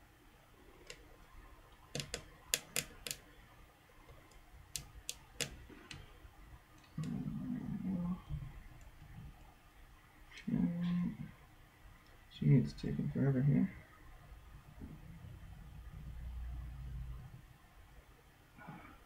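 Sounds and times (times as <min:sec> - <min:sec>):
low hum: 0:05.6 - 0:19.0.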